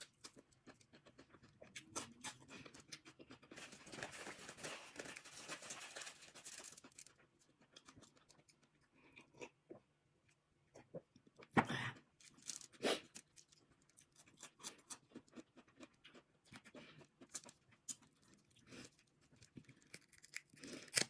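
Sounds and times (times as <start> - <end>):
chewing: 0.0 - 5.8, 12.2 - 21.0
shells crunching and tearing: 12.2 - 15.0, 19.4 - 21.0.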